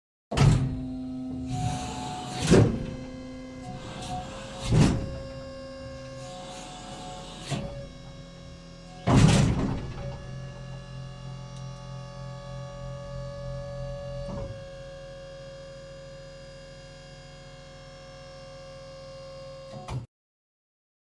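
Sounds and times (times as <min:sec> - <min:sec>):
heavy mechanical clunks: 0:00.3 - 0:08.2, 0:09.0 - 0:10.9
motor whine and hum: 0:00.4 - 0:19.9.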